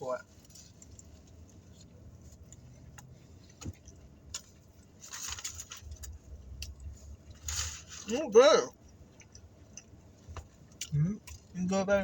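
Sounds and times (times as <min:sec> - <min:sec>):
burger being chewed crackling: 0:08.7 - 0:12.0.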